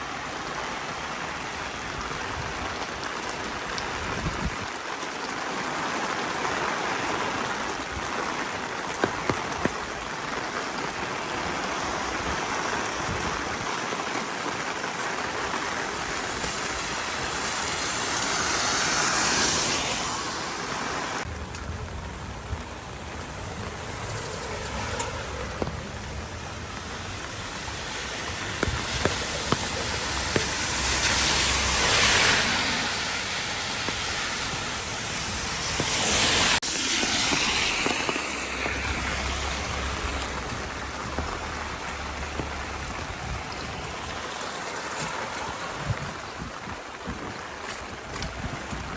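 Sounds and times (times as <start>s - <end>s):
rain: 0.0s - 48.9s
tyres hissing on wet asphalt: 0.0s - 48.9s
bus engine rumble: 21.1s - 44.3s.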